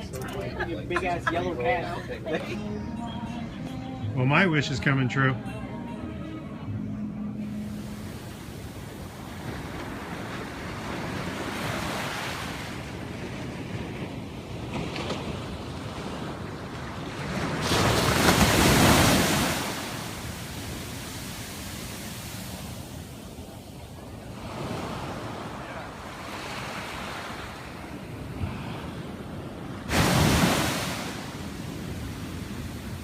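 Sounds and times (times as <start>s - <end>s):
ocean waves washing onto beach: 7.6s - 33.0s.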